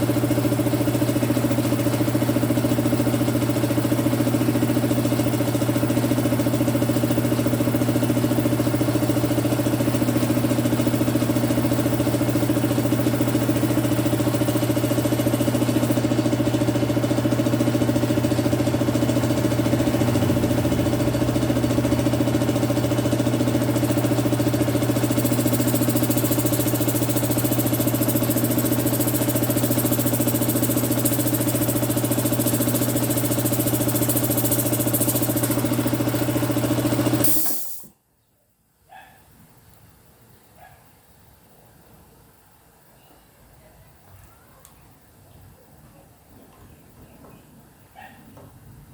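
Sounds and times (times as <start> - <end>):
compressor motor humming: 0.0 - 37.4.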